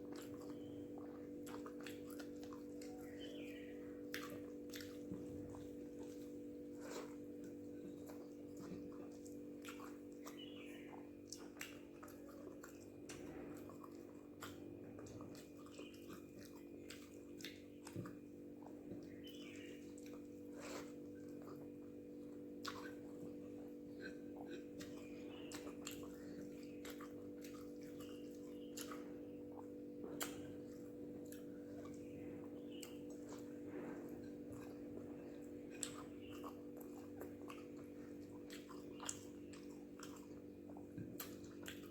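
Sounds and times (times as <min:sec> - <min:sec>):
person chewing food: 0:00.0 - 0:41.9
steady low hum: 0:00.0 - 0:41.9.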